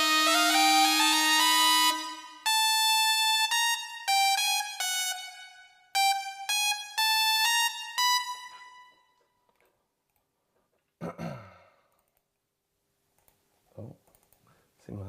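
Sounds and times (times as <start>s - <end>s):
synthesizer lead melody: 0.0s - 9.2s.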